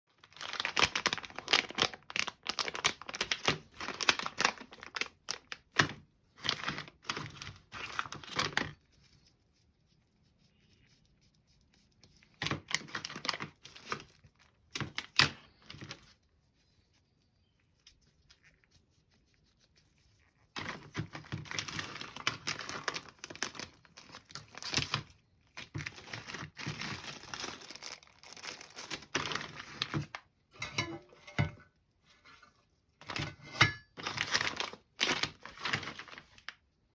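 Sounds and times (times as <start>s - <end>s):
plastic packaging crinkling: 0.1s - 9.2s, 12.2s - 16.2s, 20.1s - 31.4s, 33.0s - 36.7s.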